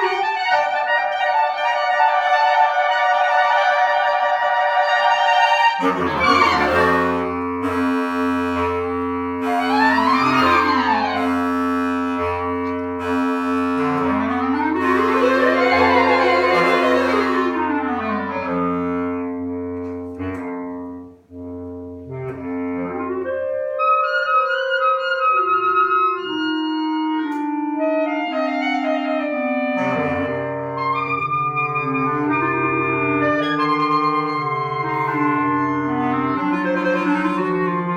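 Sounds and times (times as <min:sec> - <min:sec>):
instrumental music with drones: 0:05.8 - 0:20.5.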